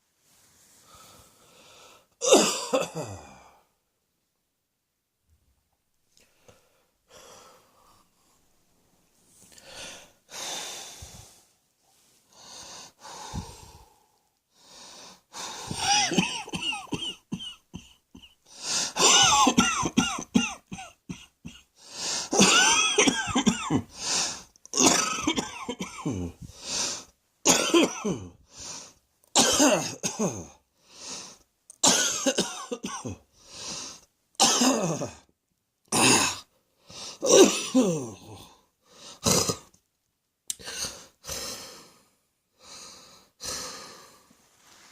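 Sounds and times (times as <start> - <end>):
person coughing hard: 2.2 - 3.4, 15.7 - 21.7, 22.3 - 26.5, 27.5 - 28.4, 29.4 - 30.6, 31.8 - 33.2, 34.4 - 35.2, 35.9 - 36.5, 37.2 - 38.4, 39.2 - 39.7
wheezing breaths: 9.4 - 16.2, 18.4 - 19.3, 21.8 - 22.4, 23.8 - 24.6, 26.2 - 27.2, 28.5 - 29.0, 30.8 - 31.5, 33.4 - 34.1, 36.8 - 37.3, 40.6 - 44.9.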